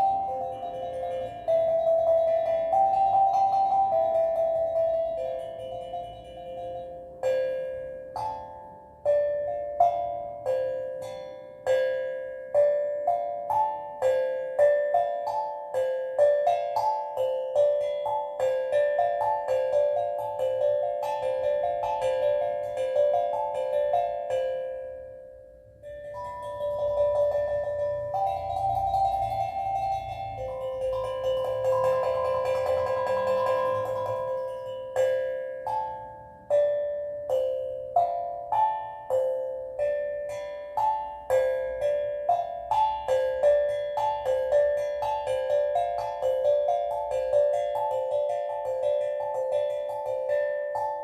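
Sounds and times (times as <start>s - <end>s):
steel drum melody: 0.0s - 51.0s.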